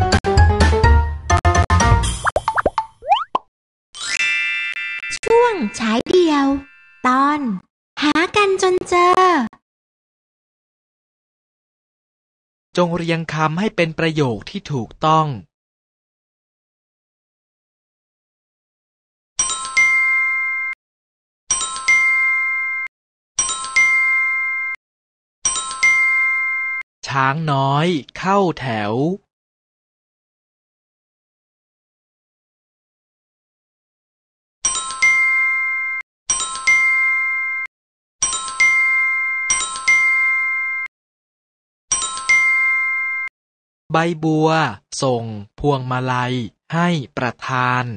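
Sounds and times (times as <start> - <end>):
bright bell-like chime: 4.0 - 7.1, 34.6 - 40.9, 41.9 - 43.3
electronic chime: 4.0 - 7.1, 42.0 - 43.3.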